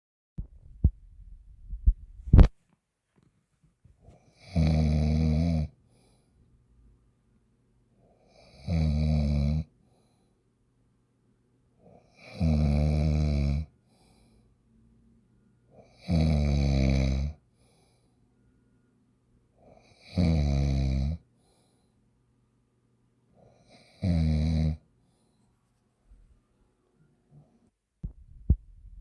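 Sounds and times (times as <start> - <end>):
loud buzzing snoring: 4.4 - 5.8, 8.3 - 9.7, 12.1 - 13.7, 15.8 - 17.4, 19.8 - 21.2, 23.6 - 24.8
faint breaths: 5.8 - 6.5, 9.8 - 10.6, 13.8 - 14.7, 17.4 - 19.0, 21.3 - 22.2, 25.0 - 26.4.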